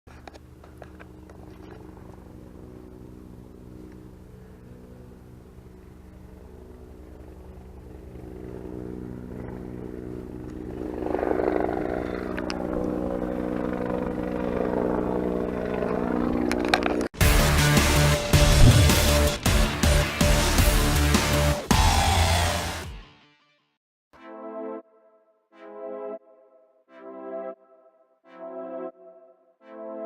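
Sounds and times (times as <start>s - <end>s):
vehicle engine running: 0.1s - 22.8s.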